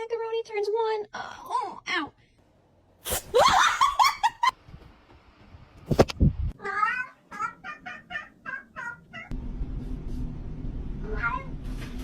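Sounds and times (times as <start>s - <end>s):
cat meowing: 6.6s - 9.3s.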